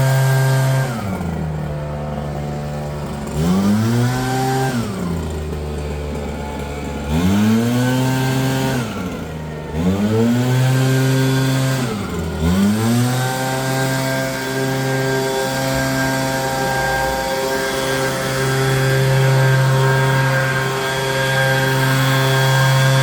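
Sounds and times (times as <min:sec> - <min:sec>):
leaf blower engine revving: 0:00.0 - 0:23.0.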